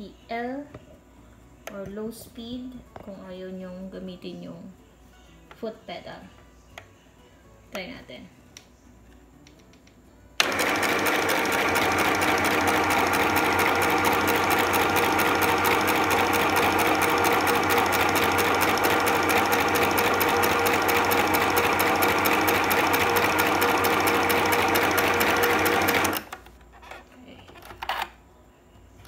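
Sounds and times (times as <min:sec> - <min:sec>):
sewing machine needle strokes: 0:10.4 - 0:26.3.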